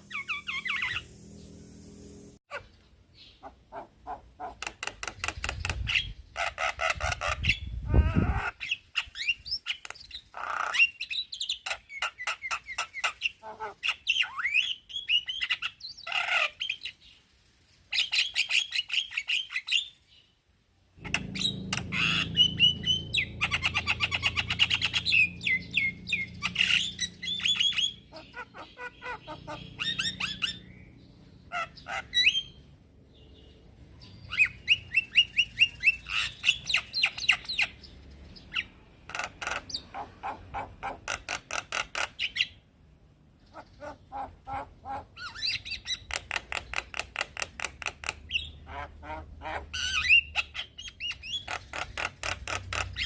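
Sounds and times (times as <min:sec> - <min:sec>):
bird singing chirps and whistles: 0:21.0 - 0:28.2, 0:34.0 - 0:37.8.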